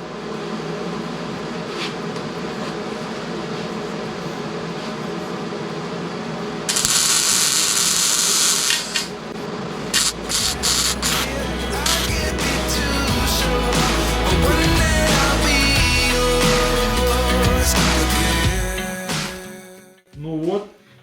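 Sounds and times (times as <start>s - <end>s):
welder hum: 6.6s - 19.5s
tack-weld bursts: 6.7s - 9.2s
weld hissing and crackling: 6.7s - 9.2s, 9.9s - 13.0s.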